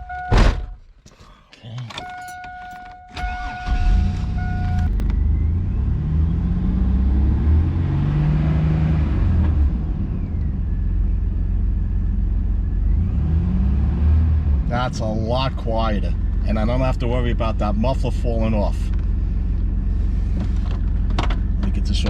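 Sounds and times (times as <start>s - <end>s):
two-tone dashboard warning chime: 2.0s - 5.0s
car engine starting and revving: 3.2s - 22.0s.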